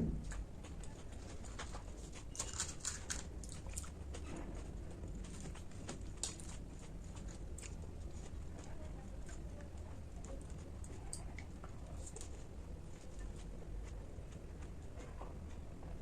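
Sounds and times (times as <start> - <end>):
low hum: 0.0 - 0.6
crunchy food chewing: 0.2 - 16.0.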